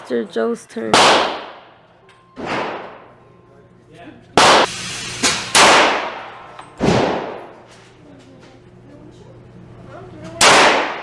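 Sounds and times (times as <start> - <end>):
echoing gunshots: 0.9 - 1.8, 2.4 - 3.0, 4.4 - 7.5, 10.4 - 11.0.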